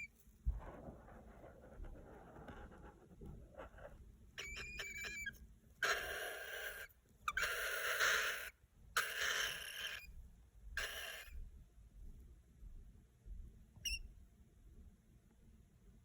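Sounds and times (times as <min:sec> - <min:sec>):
cockatiel hissing rasps: 0:04.4 - 0:10.0, 0:10.8 - 0:11.3
cockatiel chirps: 0:04.4 - 0:10.1, 0:10.8 - 0:11.4, 0:13.8 - 0:14.1.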